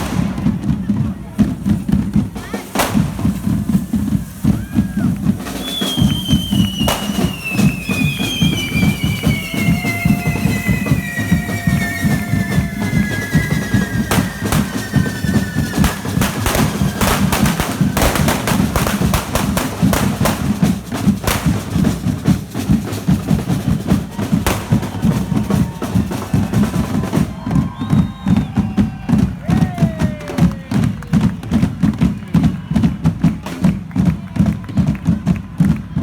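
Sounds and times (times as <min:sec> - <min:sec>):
drum band playing fast beat: 0:00.0 - 0:36.0
sharp cracks: 0:02.7 - 0:03.6, 0:05.8 - 0:09.4, 0:13.6 - 0:22.0, 0:24.5 - 0:25.1.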